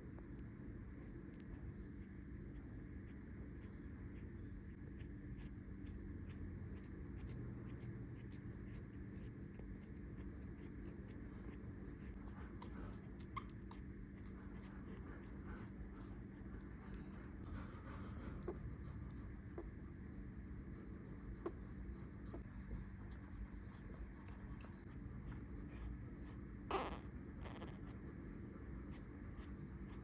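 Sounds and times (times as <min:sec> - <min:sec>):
low steady hum: 0:00.0 - 0:30.0
puppies scratching on bedding: 0:03.1 - 0:19.1
puppy squeaks: 0:25.7 - 0:28.0.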